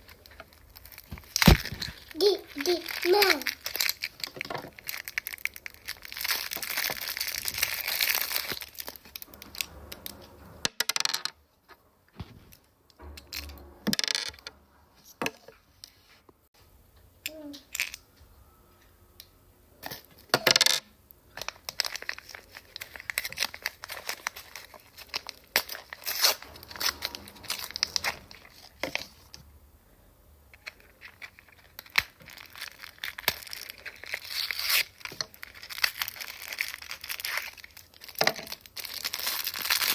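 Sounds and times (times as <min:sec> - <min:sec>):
plastic packets crinkling: 0:00.0 - 0:09.3, 0:21.3 - 0:29.1, 0:30.6 - 0:39.9.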